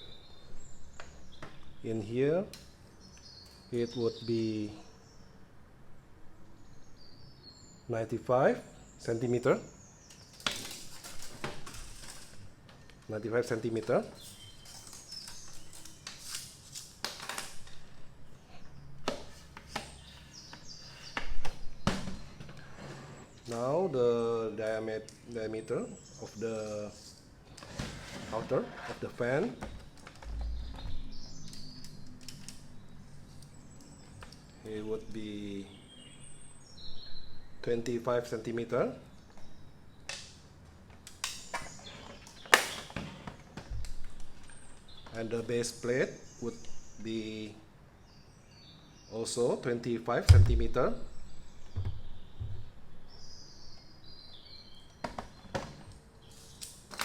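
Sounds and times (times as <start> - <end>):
loud knock: 50.3 - 51.0
soft low thud: 50.3 - 52.8.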